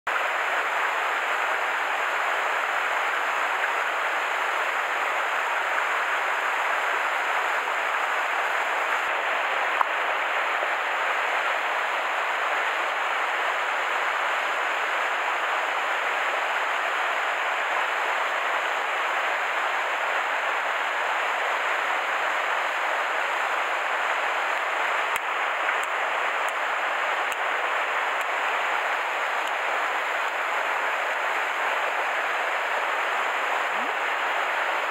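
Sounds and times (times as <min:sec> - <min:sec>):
stream water rushing: 0:00.1 - 0:34.9.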